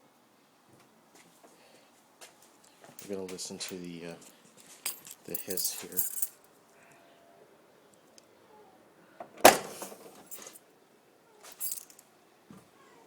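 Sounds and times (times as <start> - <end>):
car trunk lid clunk: 9.3 - 10.1.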